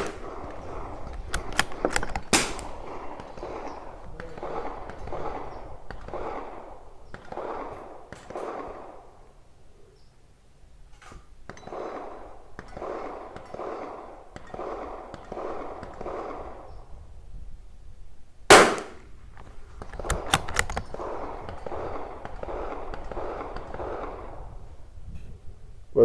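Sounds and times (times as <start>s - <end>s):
sharp clicks: 0.0s - 6.4s, 18.5s - 23.9s
rifle shot: 0.0s - 9.4s, 11.0s - 16.8s, 18.5s - 24.7s.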